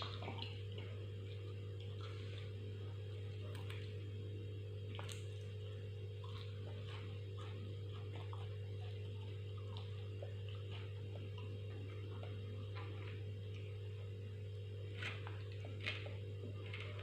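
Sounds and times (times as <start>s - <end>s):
low electrical hum: 0.0s - 17.0s
person chewing: 6.2s - 14.1s.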